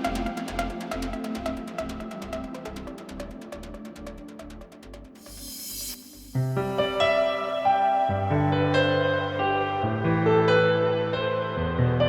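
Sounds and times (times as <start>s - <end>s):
sustained synth chords: 0.0s - 5.5s
rapid hi-hat ticks: 0.0s - 6.3s
pulsing bass line: 0.0s - 6.7s.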